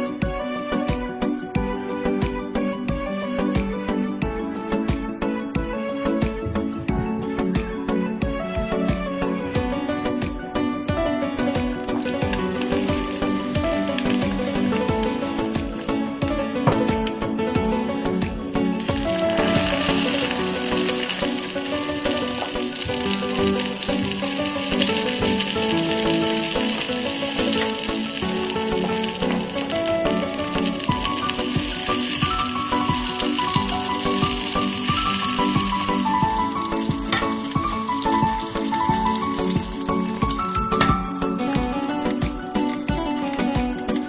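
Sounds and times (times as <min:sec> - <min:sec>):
background music: 0:00.0 - 0:44.0
food sizzling in a pan: 0:11.8 - 0:44.0.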